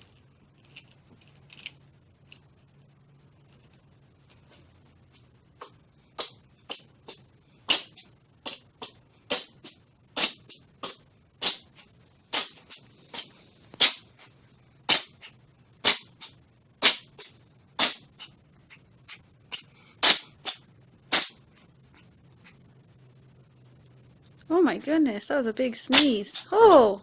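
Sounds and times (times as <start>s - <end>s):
cat sneezing: 6.2s - 13.2s, 13.8s - 14.1s, 14.9s - 18.3s, 19.5s - 21.4s.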